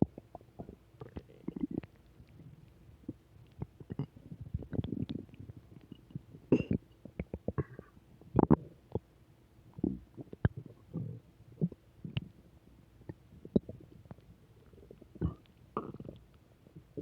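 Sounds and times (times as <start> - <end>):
small popping clicks: 0.0 - 9.1, 13.0 - 17.0
stomach growling and gurgling: 0.0 - 9.1, 9.7 - 12.4, 13.1 - 17.0.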